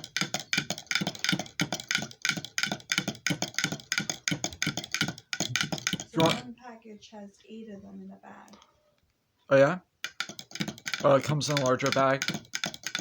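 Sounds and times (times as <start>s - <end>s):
rapid mechanical clicking: 0.0s - 6.4s, 10.0s - 13.0s.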